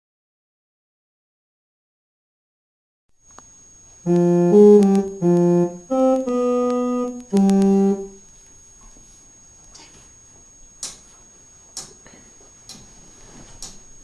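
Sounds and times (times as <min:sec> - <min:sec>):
faint high-pitched whine: 0:03.2 - 0:14.0
electronic keyboard tune: 0:04.1 - 0:08.2.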